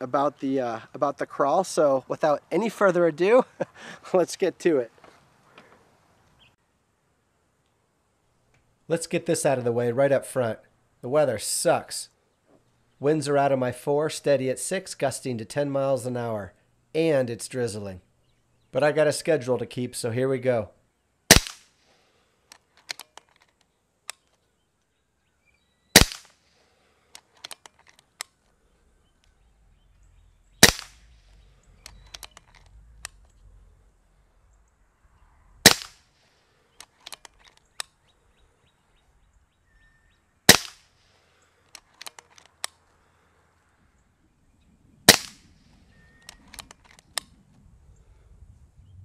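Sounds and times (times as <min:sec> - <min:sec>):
air rifle shots cracking: 0:21.3 - 0:21.8, 0:25.9 - 0:26.5, 0:30.6 - 0:33.2, 0:35.6 - 0:36.2, 0:40.5 - 0:41.0, 0:45.0 - 0:45.6
small clicks: 0:22.5 - 0:24.5, 0:27.0 - 0:28.6, 0:30.6 - 0:33.5, 0:36.7 - 0:38.0, 0:41.4 - 0:42.9, 0:46.2 - 0:47.4.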